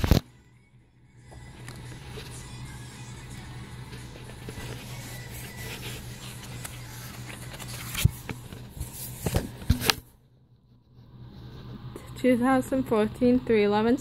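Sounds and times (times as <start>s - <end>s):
packaging rustling and scraping: 4.0s - 10.1s.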